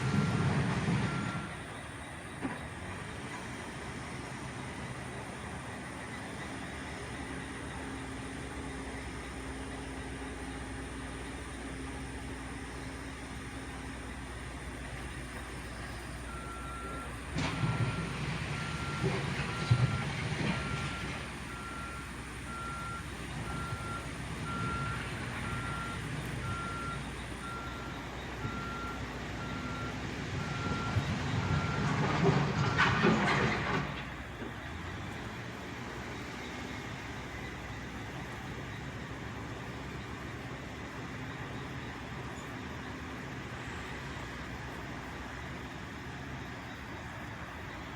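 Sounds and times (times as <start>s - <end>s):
reversing alarm beeping: 0.0s - 2.2s, 16.2s - 33.0s
diesel engine running: 0.0s - 47.9s.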